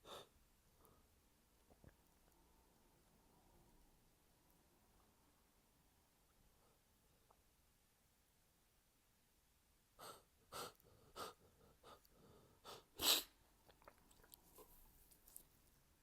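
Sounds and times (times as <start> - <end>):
person sneezing: 13.0 - 13.4.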